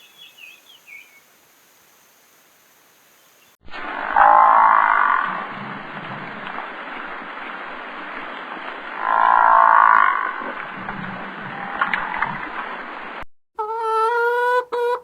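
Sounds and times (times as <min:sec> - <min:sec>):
steady background hiss: 0:00.0 - 0:03.6
animal calling: 0:04.0 - 0:05.5, 0:09.0 - 0:10.5.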